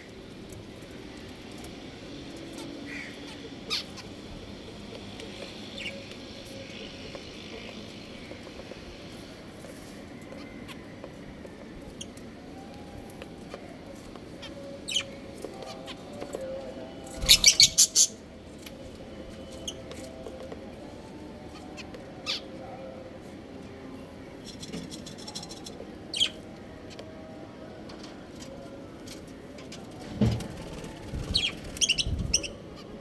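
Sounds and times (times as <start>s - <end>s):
budgerigars chirping: 17.2s - 18.2s.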